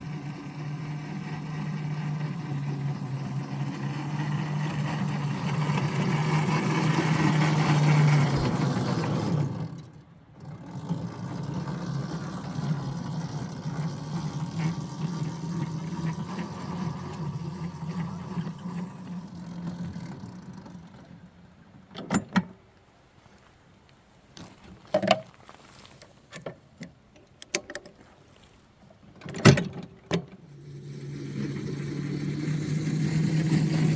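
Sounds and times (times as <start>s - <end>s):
small train engine running: 0.0s - 21.8s, 30.4s - 33.9s.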